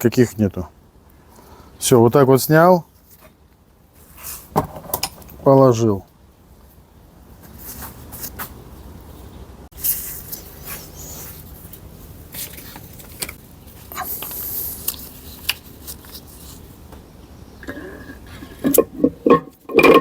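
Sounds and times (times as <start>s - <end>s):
metal scraping: 17.6s - 20.0s.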